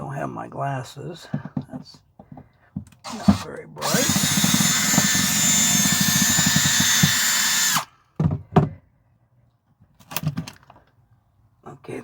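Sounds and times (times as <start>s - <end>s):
power drill running: 3.1s - 8.0s.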